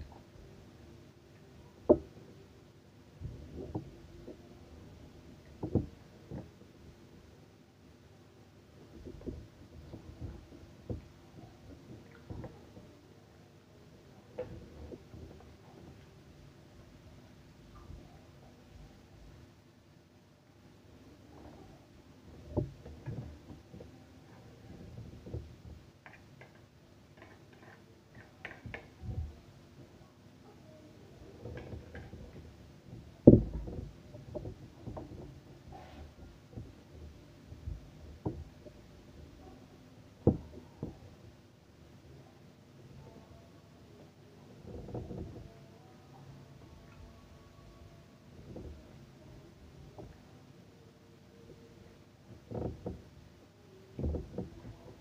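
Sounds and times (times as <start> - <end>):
objects knocking and clattering: 1.6 - 2.2, 5.4 - 6.5, 8.8 - 13.0, 21.3 - 29.9, 31.2 - 39.5, 40.2 - 41.2, 52.3 - 53.2, 53.9 - 55.0
soft low thumps: 31.1 - 39.5.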